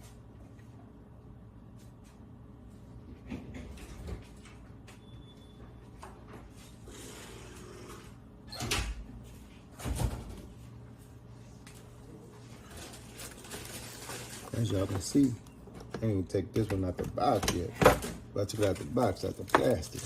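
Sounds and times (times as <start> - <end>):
scraping and rustling: 12.4 - 15.4.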